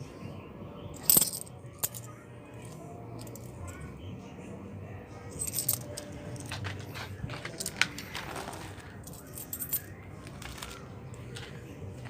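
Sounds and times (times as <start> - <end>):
small metal objects jingling: 1.0 - 3.7, 5.3 - 6.8, 7.4 - 10.8.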